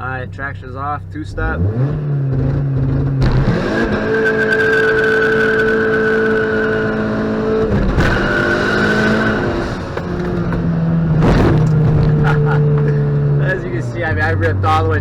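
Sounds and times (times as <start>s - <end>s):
car engine accelerating hard: 0.2s - 15.0s
tyres squealing: 4.0s - 15.0s
short rushing whoosh: 11.1s - 12.4s.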